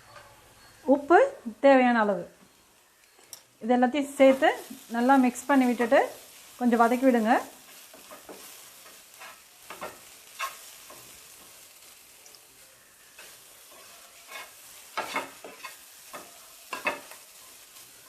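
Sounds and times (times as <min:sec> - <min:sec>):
light steady sizzle: 0:00.0 - 0:18.0
spatula scraping frying pan: 0:04.1 - 0:12.1, 0:13.0 - 0:18.0.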